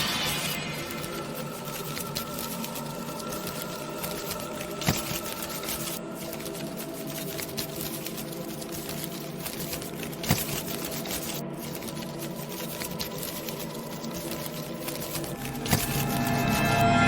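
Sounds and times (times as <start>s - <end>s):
continuous crackle: 0.0s - 17.0s
many-toned hum: 15.3s - 17.0s.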